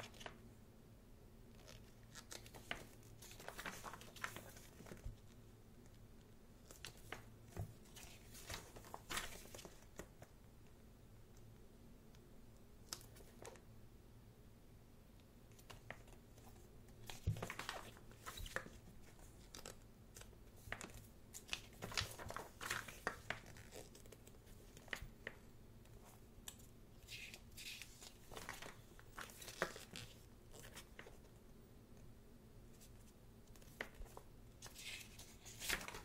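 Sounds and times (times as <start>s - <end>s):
paper pages being turned: 1.6s - 5.3s, 6.7s - 10.2s, 15.6s - 25.4s, 26.5s - 31.3s, 32.8s - 36.0s.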